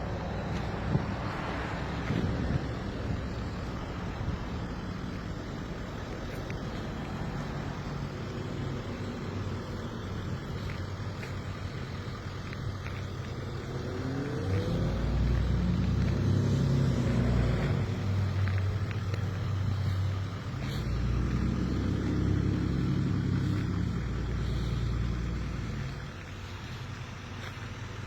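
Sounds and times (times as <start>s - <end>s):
vehicle engine speeding up: 12.1s - 26.2s.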